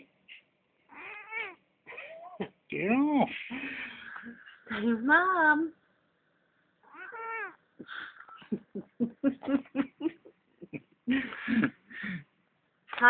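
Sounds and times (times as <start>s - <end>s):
cat meowing: 0.9s - 2.4s, 6.8s - 7.6s.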